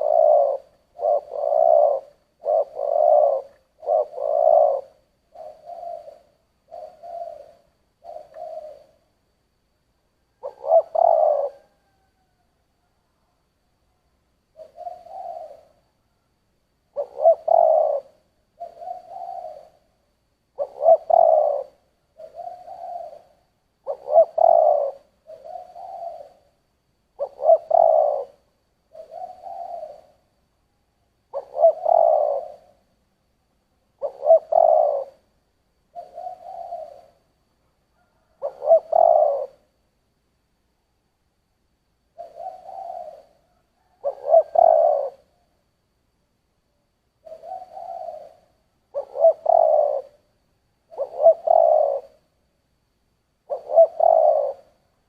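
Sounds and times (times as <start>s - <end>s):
dove cooing: 0.0s - 9.1s, 10.2s - 12.8s, 14.5s - 16.2s, 16.9s - 30.4s, 31.3s - 32.9s, 33.9s - 37.3s, 37.9s - 39.8s, 42.1s - 45.6s, 47.2s - 52.4s, 53.4s - 55.0s.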